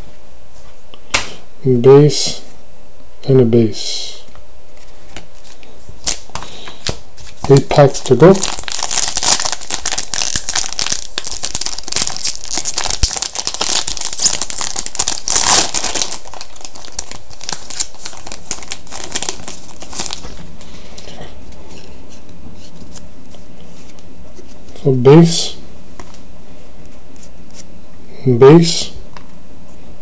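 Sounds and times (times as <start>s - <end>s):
card pack wrapper tearing and crinkling: 6.0s - 20.4s.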